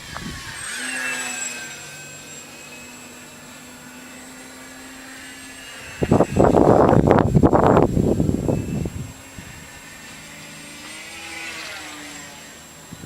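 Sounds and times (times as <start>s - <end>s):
wind buffeting microphone: 0.0s - 0.7s, 5.7s - 10.4s, 12.8s - 13.0s
electric motor propeller whine: 0.0s - 13.0s.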